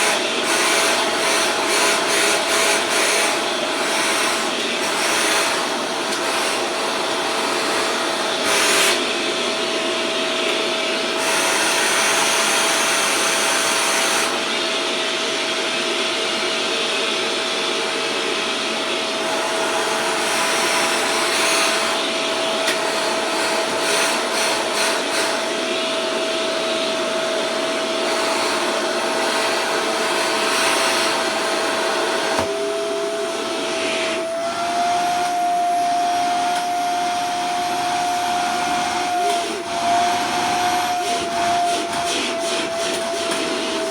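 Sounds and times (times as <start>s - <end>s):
vacuum cleaner running: 0.0s - 43.9s.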